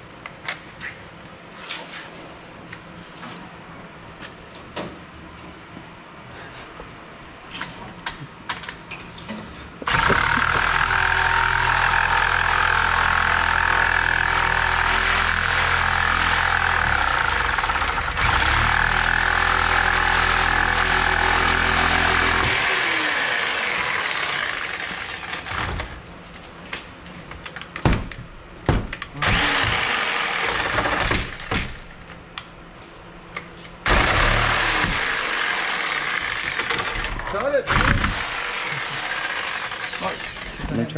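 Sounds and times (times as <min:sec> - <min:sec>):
machine motor running: 0:09.9 - 0:25.8, 0:29.2 - 0:31.5, 0:33.8 - 0:40.7.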